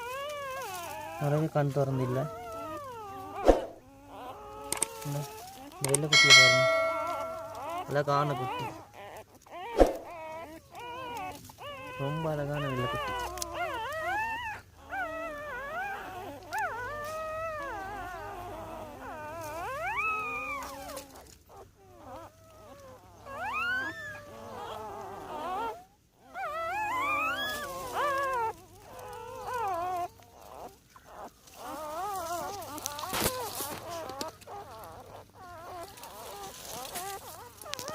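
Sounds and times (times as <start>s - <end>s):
newborn puppies whining: 0.0s - 37.9s.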